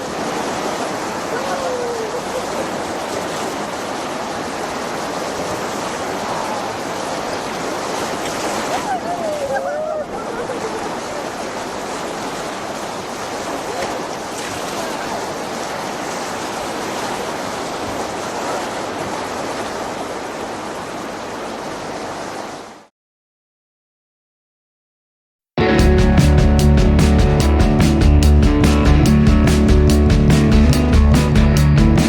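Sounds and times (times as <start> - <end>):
river rapids rushing: 0.0 - 22.7.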